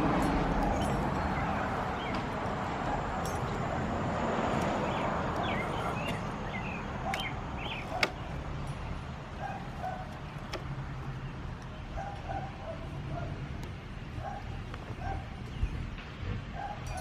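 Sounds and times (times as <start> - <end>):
bird chirps: 4.8 - 8.4.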